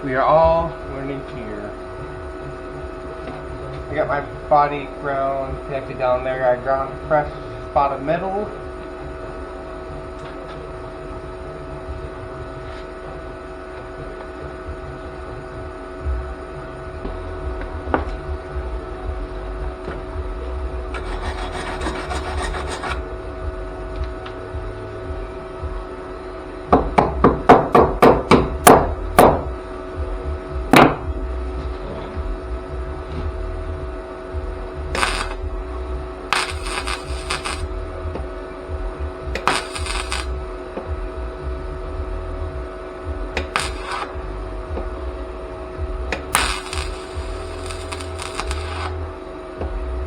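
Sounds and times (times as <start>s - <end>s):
steady electrical hum: 0.0s - 50.0s
welding crackle on sheet metal: 20.9s - 23.1s, 34.8s - 38.2s, 39.3s - 40.7s, 43.3s - 44.6s, 46.1s - 49.2s.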